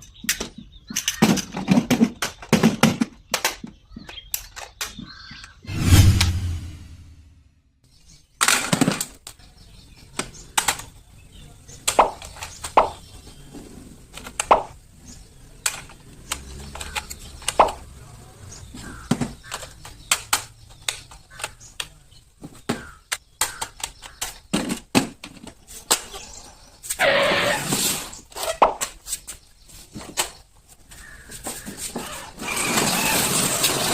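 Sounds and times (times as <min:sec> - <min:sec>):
toy car plastic parts knocking: 0:00.0 - 0:05.6, 0:10.2 - 0:11.0, 0:11.7 - 0:13.2, 0:14.1 - 0:18.0, 0:18.6 - 0:26.4.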